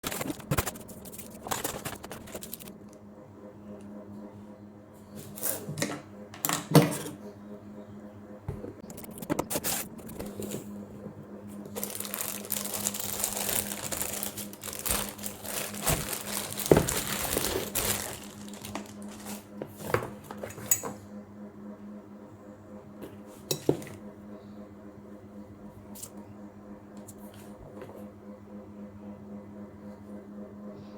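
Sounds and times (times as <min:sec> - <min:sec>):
packaging crinkling and tearing: 0:00.0 - 0:02.8, 0:11.7 - 0:19.5
faint steady hum: 0:00.0 - 0:30.9.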